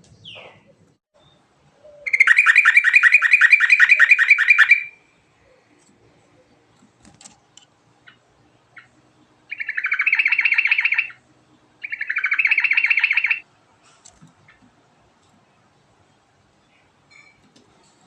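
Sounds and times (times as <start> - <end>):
bird trilling song: 0.1 - 5.0, 8.0 - 11.2, 11.8 - 13.4.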